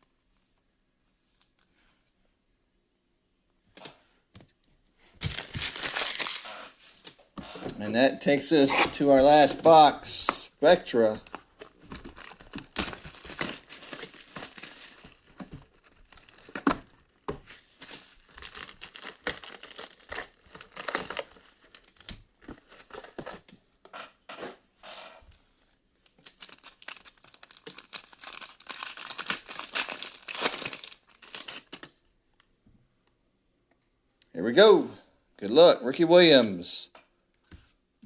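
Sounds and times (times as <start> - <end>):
plastic wrapping crinkling and tearing: 5.2 - 7.0, 10.9 - 23.4, 26.1 - 32.0.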